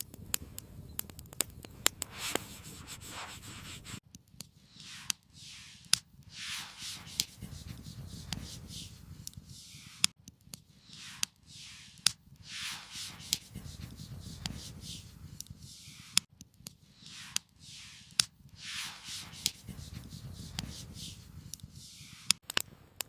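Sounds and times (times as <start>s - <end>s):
campfire crackling and popping: 0.0s - 2.8s, 7.1s - 11.4s, 13.2s - 17.5s, 19.3s - 23.0s
swishing rubbing sounds: 2.0s - 4.0s, 4.7s - 10.1s, 10.8s - 16.2s, 16.9s - 22.4s.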